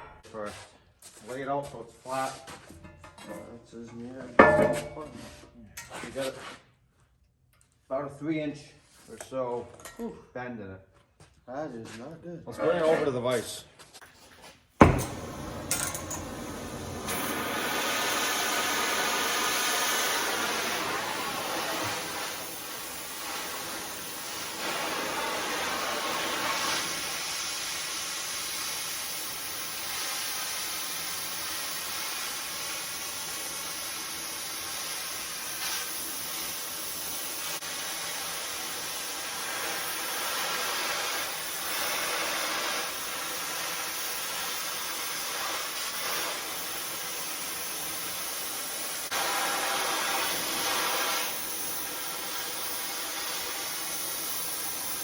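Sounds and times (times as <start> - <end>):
cutting torch flame hissing: 14.8 - 55.0.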